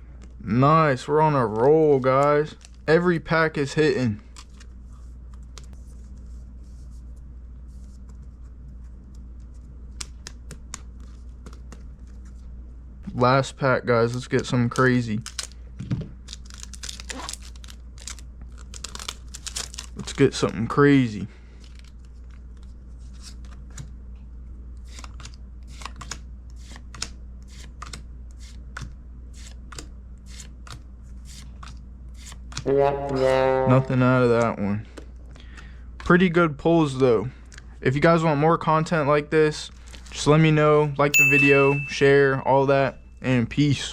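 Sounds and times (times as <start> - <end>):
cards clicking and tapping: 24.9 - 28.0.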